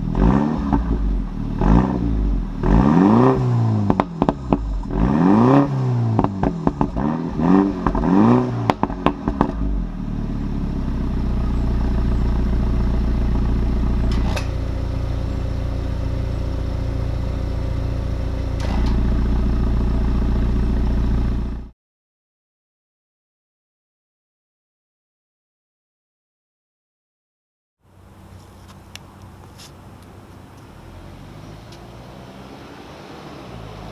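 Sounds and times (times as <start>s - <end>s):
car engine revving: 0.0s - 21.7s, 29.2s - 33.9s
exhaust pops and crackles: 3.8s - 5.0s, 6.2s - 7.1s, 7.8s - 9.7s
car engine idling: 6.1s - 21.7s, 27.8s - 32.0s.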